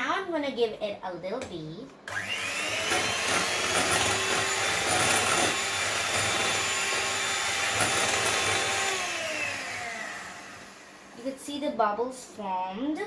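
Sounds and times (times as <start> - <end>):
electric mixer whisking batter: 2.1 - 11.2.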